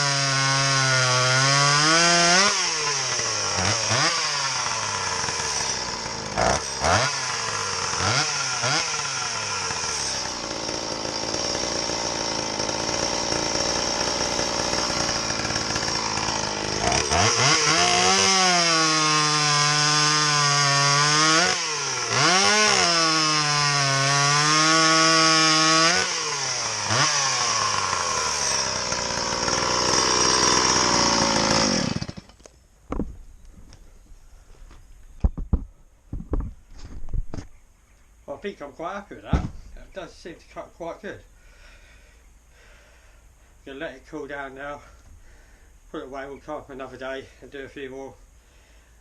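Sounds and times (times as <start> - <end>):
chainsaw revving and cutting wood: 0.0 - 33.0.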